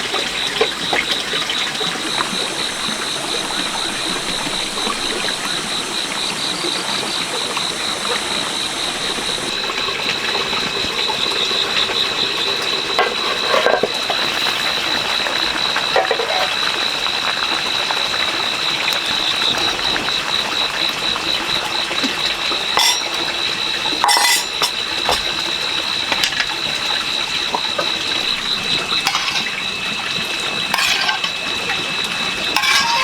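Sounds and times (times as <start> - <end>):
clinks and knocks: 13.0 - 15.0, 22.8 - 23.2, 24.0 - 25.3, 29.0 - 29.6, 30.8 - 31.4, 32.5 - 33.0.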